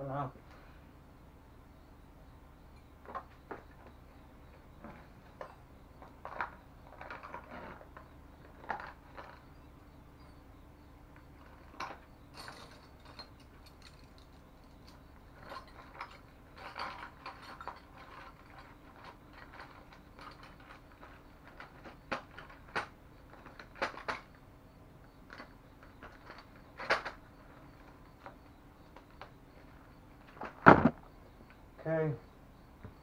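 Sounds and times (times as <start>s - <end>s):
tools handled on bicycle: 11.4s - 24.4s.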